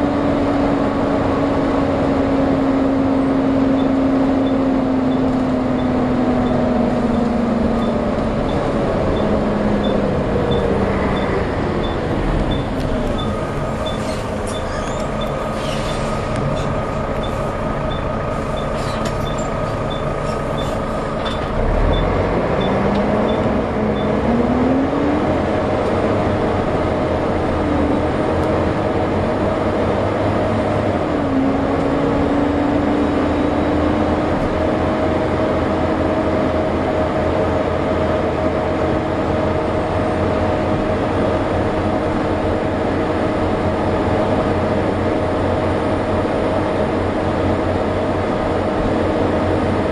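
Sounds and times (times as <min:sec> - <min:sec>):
diesel bus engine: 0:00.0 - 0:49.9
engine ticking: 0:03.5 - 0:24.2.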